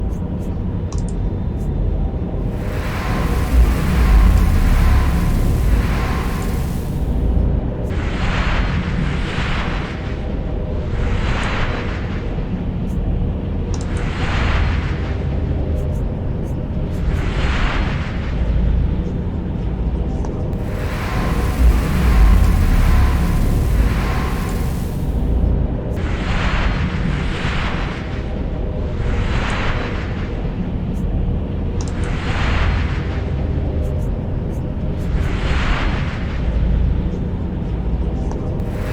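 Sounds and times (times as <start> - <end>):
deep steady rumble: 2.3 - 8.0, 20.6 - 26.0, 38.6 - 38.9.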